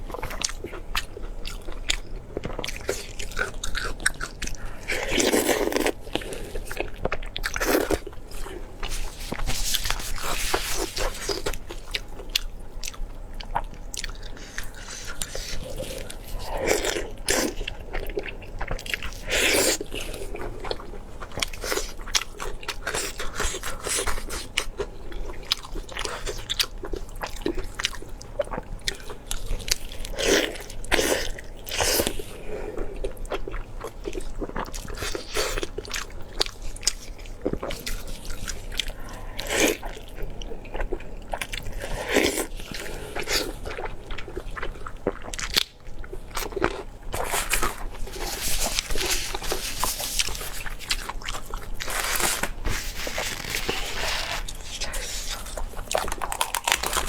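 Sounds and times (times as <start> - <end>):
person chewing food: 0.0 - 57.0
crunching bites: 55.9 - 57.0.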